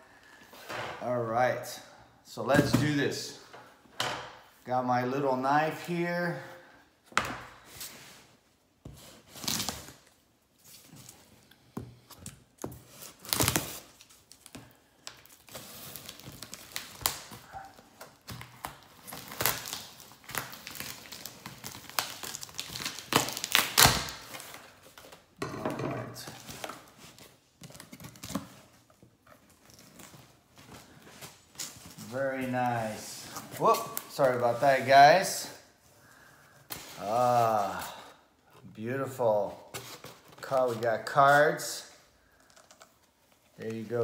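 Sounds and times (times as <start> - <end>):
tape tearing: 13.0 - 14.5, 15.3 - 25.2
packing material crinkling: 13.0 - 25.2.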